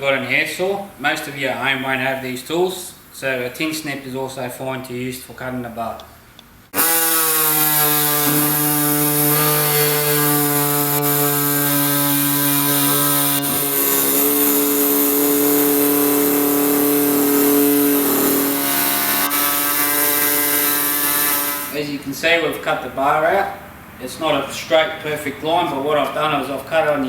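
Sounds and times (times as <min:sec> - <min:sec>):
air saw buzzing: 0:06.7 - 0:21.8.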